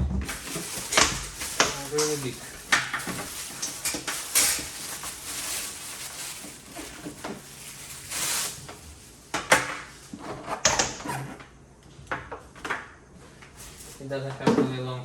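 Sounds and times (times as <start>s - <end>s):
packaging rustling: 0.2s - 10.2s, 13.5s - 14.1s.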